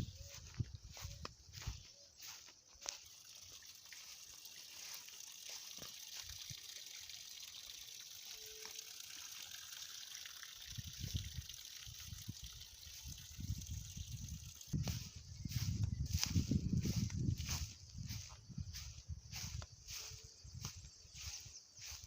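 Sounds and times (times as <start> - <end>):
running water rushing: 2.9 - 14.8.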